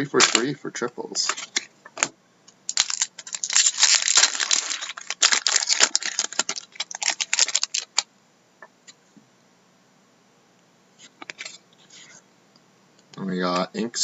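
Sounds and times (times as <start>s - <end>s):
foil wrapper crinkling and tearing: 2.7s - 8.1s.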